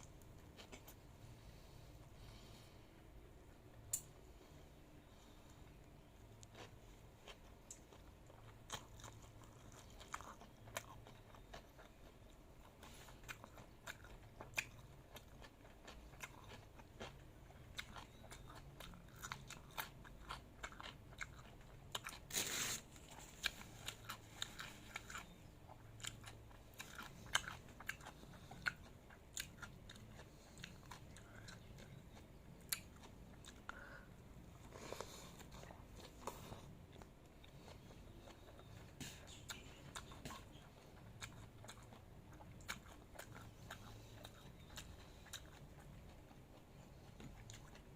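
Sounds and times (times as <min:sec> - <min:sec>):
crunching and chewing: 0:00.0 - 0:01.0, 0:03.8 - 0:47.9.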